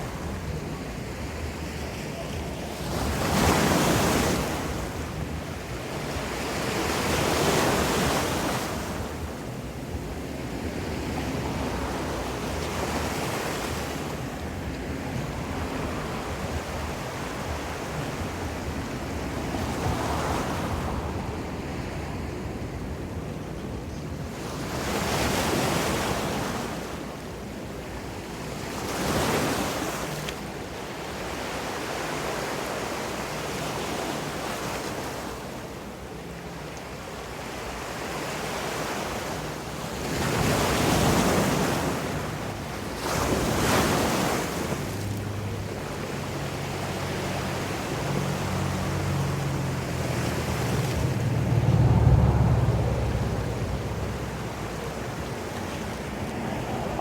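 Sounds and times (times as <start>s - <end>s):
ocean surf washing ashore: 0.0s - 57.0s
low hum: 48.9s - 55.3s.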